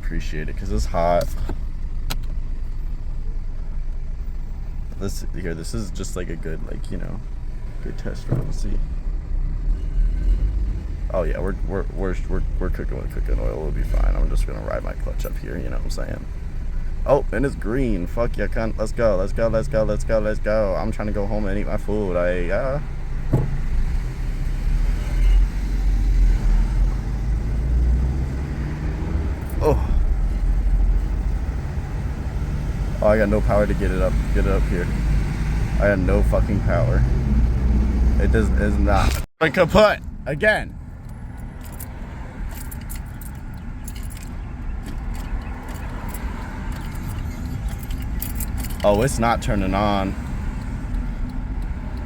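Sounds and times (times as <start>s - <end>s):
light clicks in ignition: 1.2s - 2.8s, 50.2s - 52.0s
car engine knocking under load: 23.1s - 23.9s
car keys jingling: 40.9s - 50.0s.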